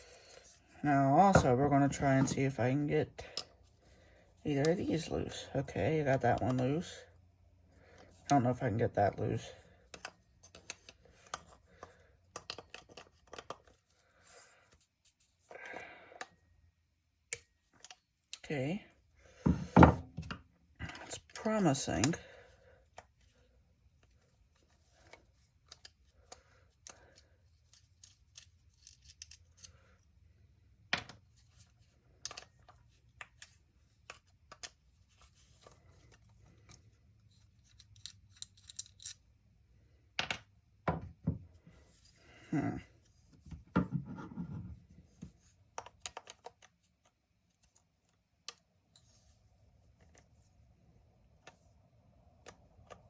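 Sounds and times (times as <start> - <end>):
screwdriver on metal parts clicking: 37.7 - 39.2.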